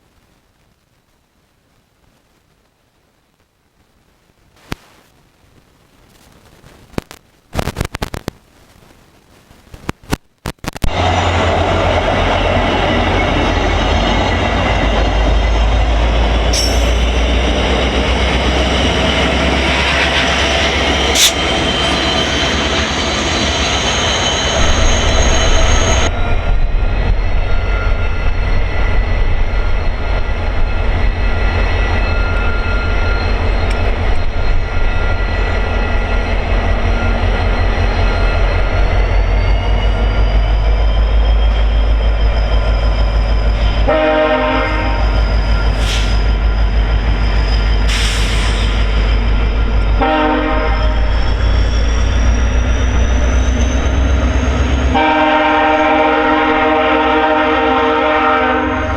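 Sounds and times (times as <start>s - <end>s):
train rolling past: 10.8s - 58.9s
wheels squealing: 11.0s - 26.4s, 45.0s - 54.9s.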